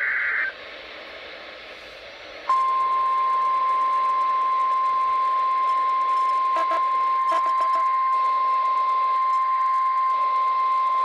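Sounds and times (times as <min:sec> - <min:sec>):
faint radio static: 0:00.0 - 0:11.0
steady high alarm beep: 0:02.5 - 0:11.0.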